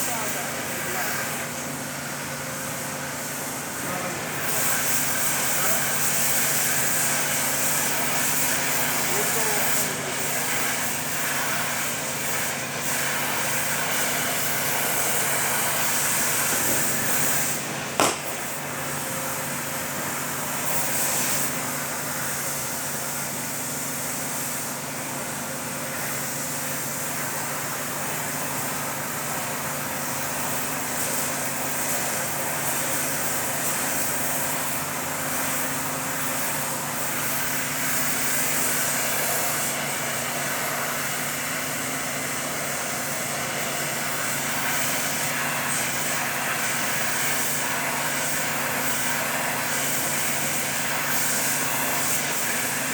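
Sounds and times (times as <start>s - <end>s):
sharp click: 18.0s - 18.6s.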